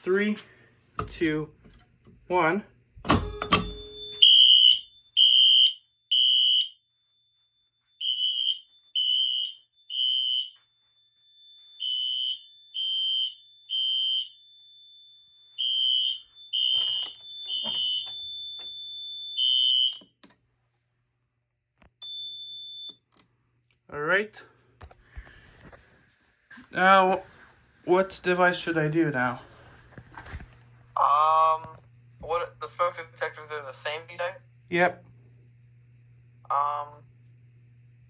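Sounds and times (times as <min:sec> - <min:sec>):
pull station click: 0:01.0 - 0:01.8, 0:03.0 - 0:04.3
fire alarm horn blasts: 0:03.2 - 0:07.1, 0:08.0 - 0:20.1.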